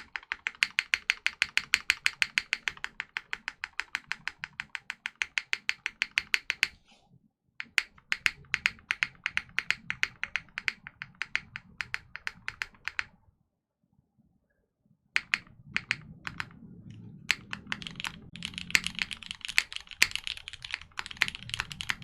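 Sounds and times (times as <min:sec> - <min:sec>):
fast typing on mechanical keyboard: 0:00.0 - 0:06.8, 0:07.6 - 0:13.2, 0:15.2 - 0:22.0.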